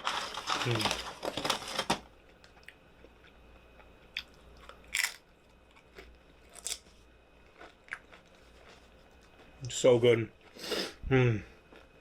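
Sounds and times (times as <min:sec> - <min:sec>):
person chewing food: 0:02.5 - 0:09.8, 0:11.6 - 0:12.0.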